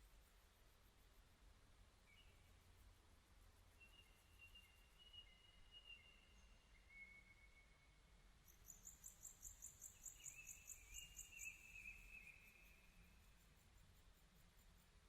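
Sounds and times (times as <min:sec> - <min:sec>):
insect chirping in pulses: 0:08.5 - 0:13.6.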